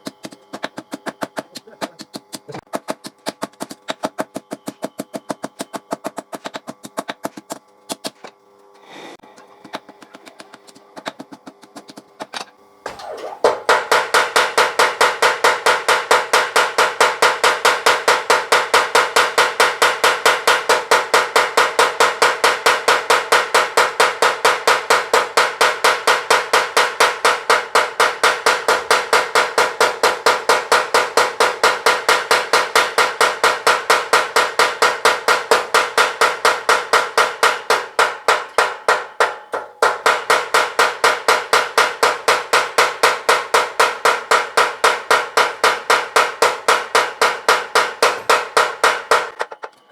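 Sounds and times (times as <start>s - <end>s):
power hammer pounding steel: 9.8s - 49.7s.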